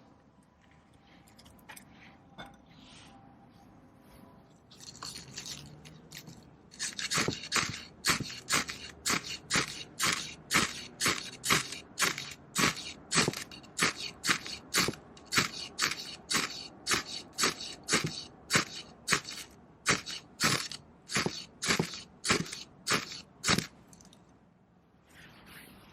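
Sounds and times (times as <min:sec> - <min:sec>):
knife shaving wood: 0:04.7 - 0:23.8.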